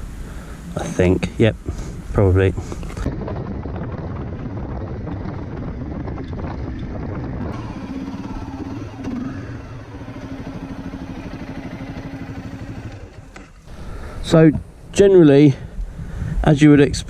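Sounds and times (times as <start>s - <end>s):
motorcycle engine running: 3.1s - 13.8s.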